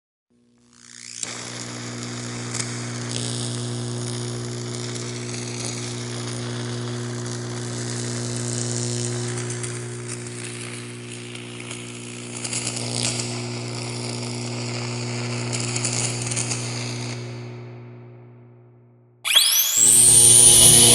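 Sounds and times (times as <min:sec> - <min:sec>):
crackling sparks: 0:00.7 - 0:17.6, 0:19.3 - 0:20.9
electrical buzz: 0:19.3 - 0:20.9.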